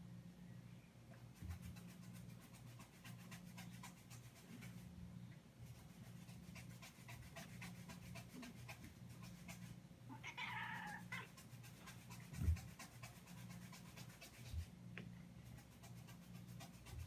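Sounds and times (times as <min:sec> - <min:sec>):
cat meowing: 0:10.1 - 0:11.3.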